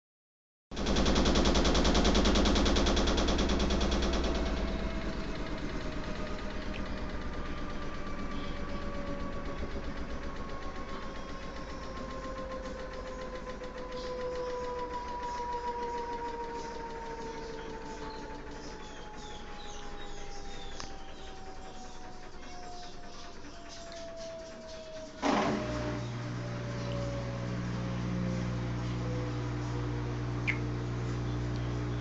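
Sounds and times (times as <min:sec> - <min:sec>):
washing machine heavy rattle: 0:00.8 - 0:08.3
falling whine: 0:02.3 - 0:32.0.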